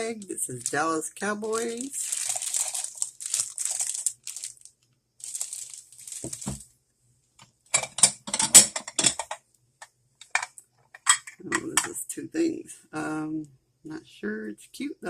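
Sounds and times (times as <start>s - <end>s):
bag crinkling: 0.2s - 6.6s
hard objects clacking: 10.2s - 12.0s.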